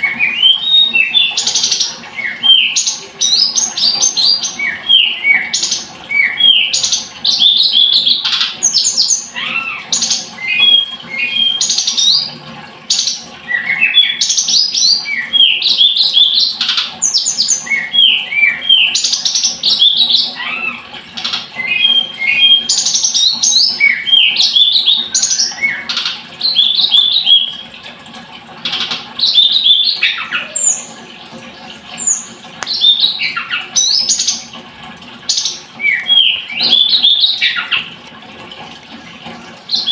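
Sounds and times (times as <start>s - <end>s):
songbird chirping and whistling: 0.1s - 9.8s, 10.4s - 12.3s, 13.5s - 16.5s, 17.1s - 20.8s, 21.6s - 27.6s, 29.2s - 31.0s, 32.0s - 34.4s, 35.3s - 37.9s.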